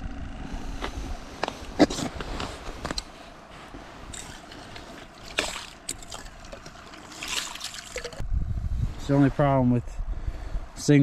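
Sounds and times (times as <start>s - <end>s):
water trickling and sloshing: 4.1s - 8.2s
short splashes: 4.2s - 8.2s.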